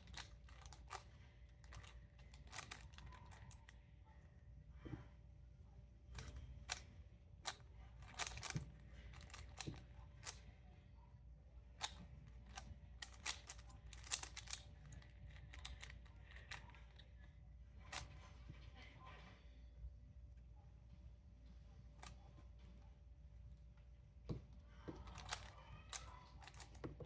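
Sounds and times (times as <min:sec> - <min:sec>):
plastic cube clicking: 0:00.0 - 0:03.6, 0:07.5 - 0:10.4, 0:11.8 - 0:17.0, 0:25.0 - 0:26.9.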